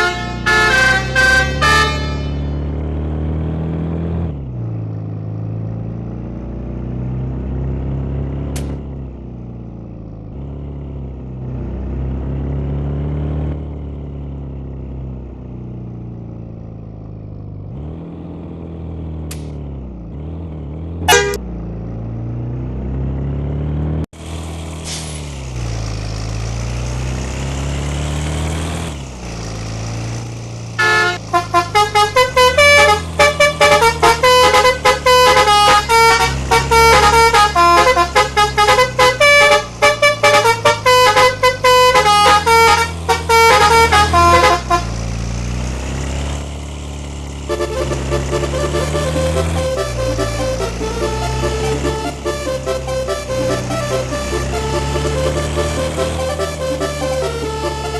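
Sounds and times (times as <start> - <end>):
short horn toot: 0.0 - 2.5, 21.1 - 21.4, 30.8 - 45.0
multi-tone bus horn tune: 0.0 - 4.2, 20.9 - 21.6, 30.7 - 45.5, 47.4 - 57.9
vehicle engine running: 0.0 - 57.9.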